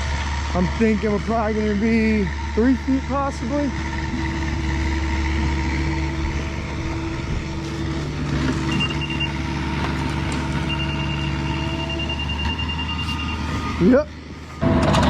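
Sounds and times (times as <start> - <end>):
diesel engine running: 0.0 - 15.0
high electronic tone: 3.8 - 7.5, 8.5 - 15.0.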